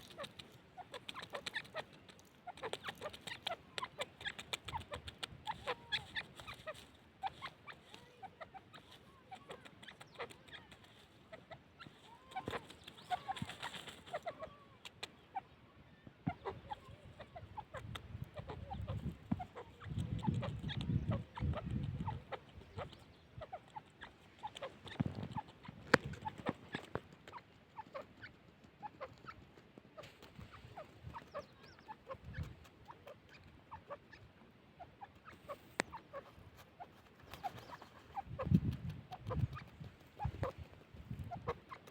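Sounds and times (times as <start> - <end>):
bird clucking calls: 0.0 - 41.9.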